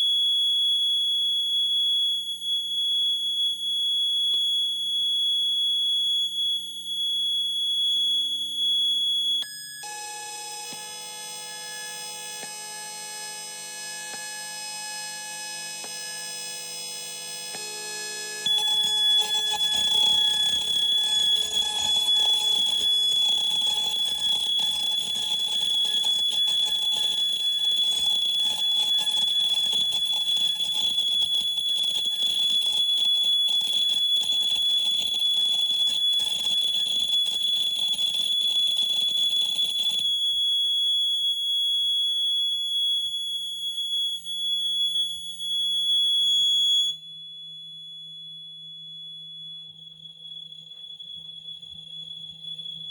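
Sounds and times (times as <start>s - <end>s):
piercing high electronic tone: 10.9s - 39.8s
cluster of held electronic tones: 18.5s - 40.0s.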